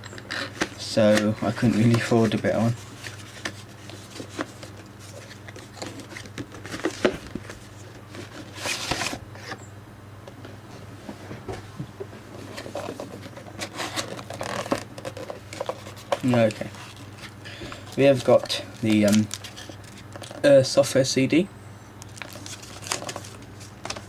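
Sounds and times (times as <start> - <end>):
scratchy rustle: 0.3 - 9.5, 12.3 - 17.4.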